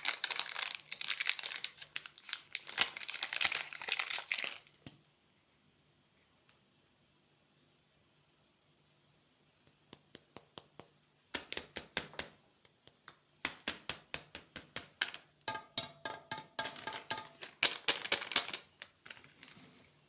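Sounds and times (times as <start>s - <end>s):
hands handling candy packaging: 0.0s - 4.9s, 16.7s - 19.6s
tapping on hard container: 13.5s - 18.5s.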